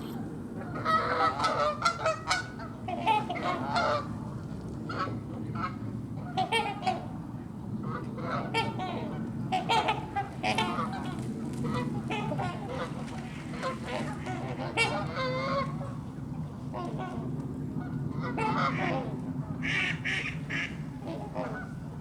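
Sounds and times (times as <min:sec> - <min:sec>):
steady low hum: 0:00.0 - 0:03.1.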